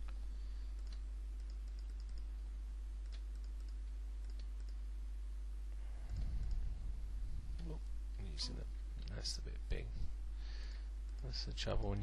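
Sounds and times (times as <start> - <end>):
computer mouse clicks: 0.0 - 2.4, 3.0 - 4.8, 6.1 - 6.6
low electrical hum: 0.0 - 12.0.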